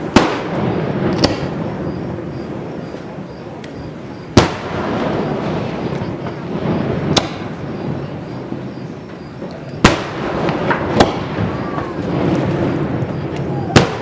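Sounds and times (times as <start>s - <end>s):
small firework pops: 0.0s - 1.7s, 4.4s - 7.6s, 8.6s - 14.0s
steady haze of noise: 0.0s - 14.0s
firework shells bursting: 3.7s - 14.0s.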